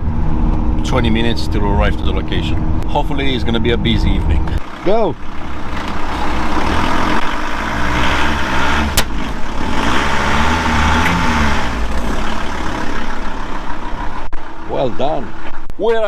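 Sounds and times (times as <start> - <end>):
van engine running: 0.0 - 15.8
road noise: 0.0 - 16.0.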